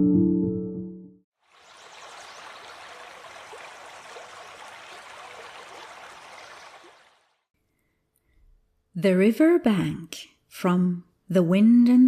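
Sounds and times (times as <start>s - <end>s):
stream babbling: 1.4s - 7.5s.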